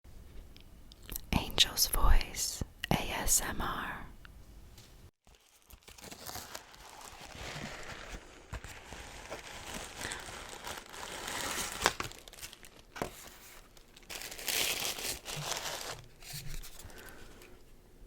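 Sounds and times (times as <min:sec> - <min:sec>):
packaging crinkling and tearing: 0:05.2 - 0:17.4.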